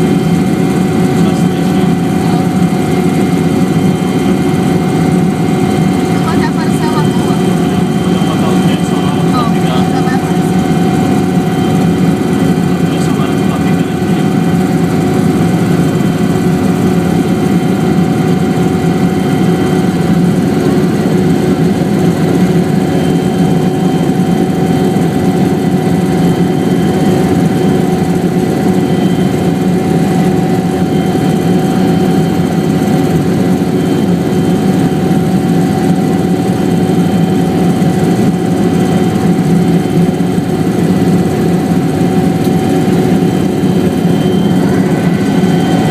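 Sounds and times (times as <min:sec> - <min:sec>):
helicopter engine and rotor noise: 0:00.0 - 0:45.9.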